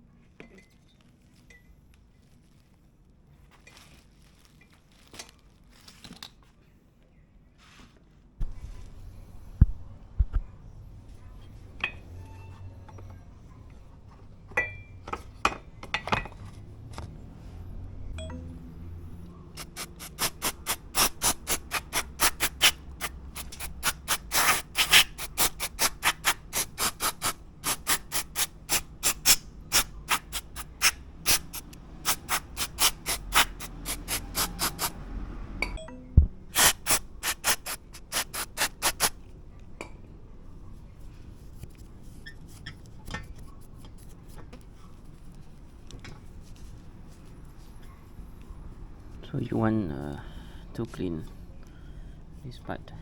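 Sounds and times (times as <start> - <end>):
rapid scrubbing strokes: 19.6 - 35.0.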